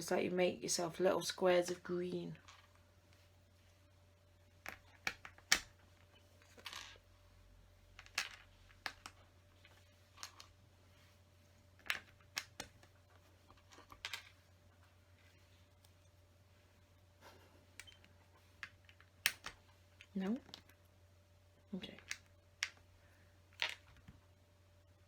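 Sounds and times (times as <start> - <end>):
faint steady hum: 0.0 - 25.0
plastic pieces clicking: 11.8 - 12.8, 17.8 - 20.7, 21.8 - 22.8.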